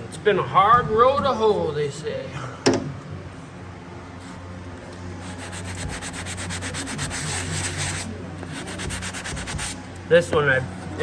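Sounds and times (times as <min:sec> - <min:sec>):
hand sander rasping on drywall: 0:05.2 - 0:09.8.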